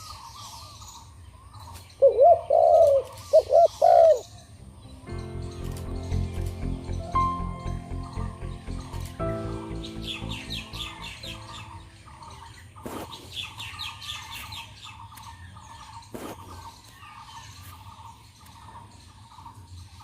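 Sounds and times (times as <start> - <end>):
low bird twittering: 0.0 - 20.0
high bird chirps: 1.7 - 17.7
sharp clicks: 5.6 - 6.6.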